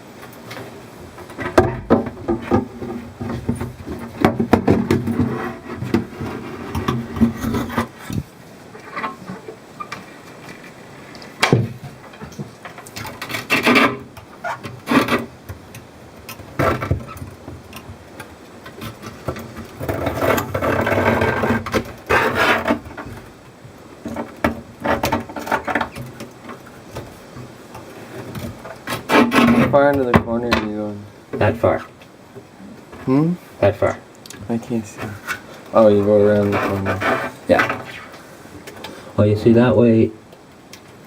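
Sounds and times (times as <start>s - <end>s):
scraping: 0.4s - 32.0s, 32.8s - 39.1s
knocks against wood: 1.2s - 6.1s, 11.4s - 18.0s.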